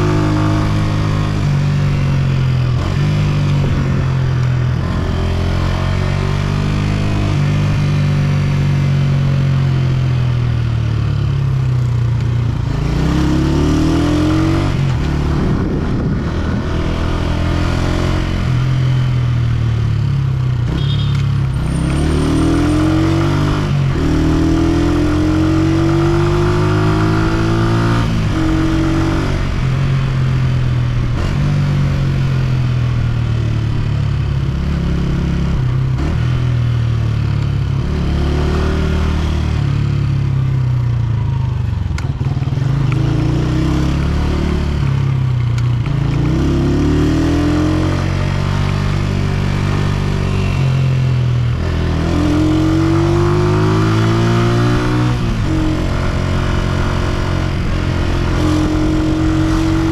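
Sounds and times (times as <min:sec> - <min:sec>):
motorcycle engine accelerating: 0:00.0 - 0:59.9.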